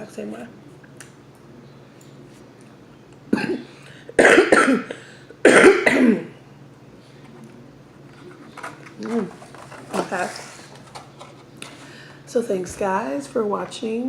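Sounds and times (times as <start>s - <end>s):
woman coughing: 3.3s - 6.4s.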